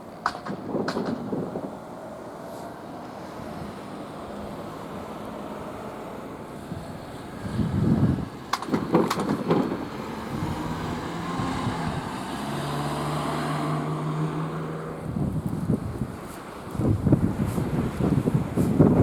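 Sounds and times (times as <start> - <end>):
sharp knocks: 0.2 - 1.5, 8.5 - 10.0
motor vehicle passing: 0.2 - 19.0.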